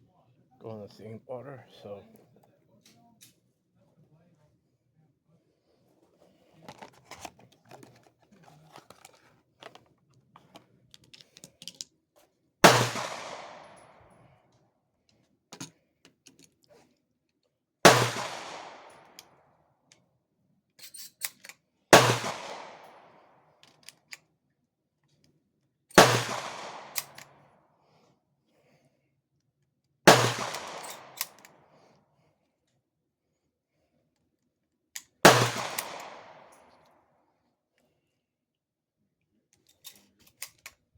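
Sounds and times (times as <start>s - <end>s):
gun handling clicks: 6.6s - 9.8s, 10.4s - 11.9s, 12.9s - 13.8s, 18.1s - 19.3s, 20.8s - 21.6s, 22.2s - 24.2s, 26.2s - 27.3s, 30.3s - 31.6s, 35.0s - 36.6s, 39.6s - 40.8s
pump action being worked: 6.6s - 9.8s
shotgun blasts with echo: 12.6s - 14.0s, 17.9s - 19.2s, 22.0s - 23.1s, 26.0s - 27.2s, 30.1s - 31.4s, 35.3s - 36.6s.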